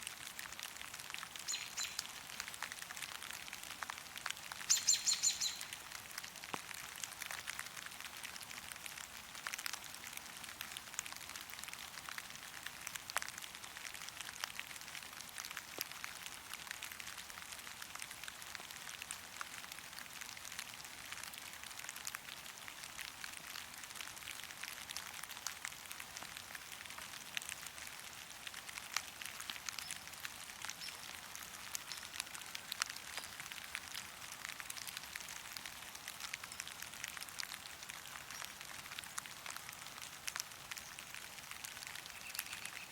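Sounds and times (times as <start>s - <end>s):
rain drops ticking: 0.0s - 42.9s
bird call: 1.5s - 2.0s, 4.7s - 5.7s, 42.1s - 42.9s.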